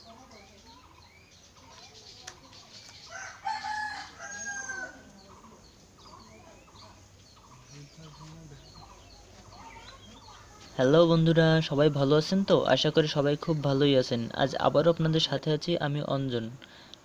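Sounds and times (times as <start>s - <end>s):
small birds chirping: 0.0s - 17.0s
rooster crowing: 3.0s - 5.4s.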